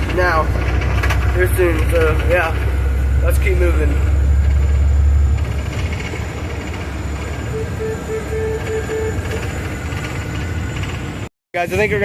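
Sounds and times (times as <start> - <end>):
truck engine rumble: 0.0 - 12.0
short beeps: 7.5 - 9.6.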